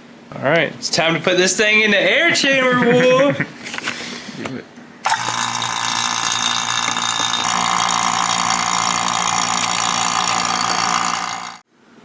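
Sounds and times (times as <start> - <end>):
air pump humming and hissing: 5.0 - 11.6.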